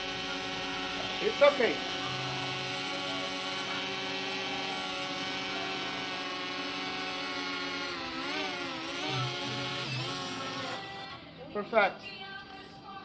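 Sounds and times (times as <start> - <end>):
drone motors whining: 0.0 - 11.3.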